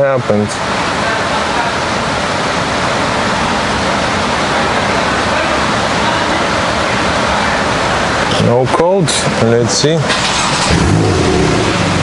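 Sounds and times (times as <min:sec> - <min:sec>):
loud rushing noise: 0:10.0 - 0:12.0.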